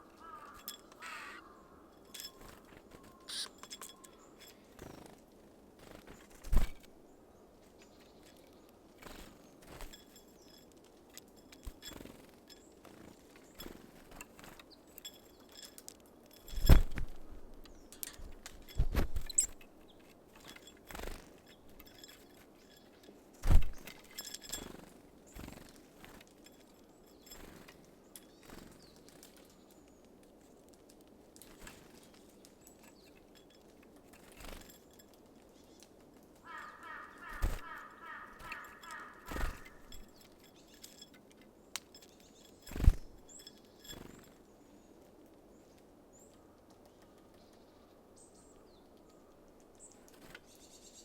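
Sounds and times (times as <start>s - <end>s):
faint high bird chirps: 0.0s - 5.1s, 19.2s - 20.0s, 36.4s - 41.1s
birds knocking and pecking: 0.0s - 7.0s, 7.6s - 44.4s.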